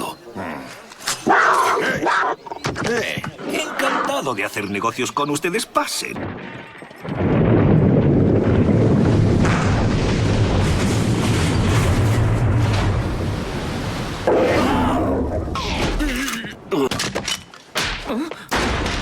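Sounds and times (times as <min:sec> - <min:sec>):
loud steady rumbling: 0:07.2 - 0:15.9.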